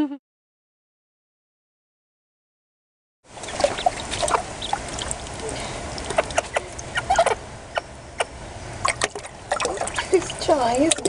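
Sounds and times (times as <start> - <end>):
small water splashes: 3.3 - 7.4, 8.8 - 11.0
ducklings peeping: 3.3 - 10.2
hen clucking: 3.4 - 8.4.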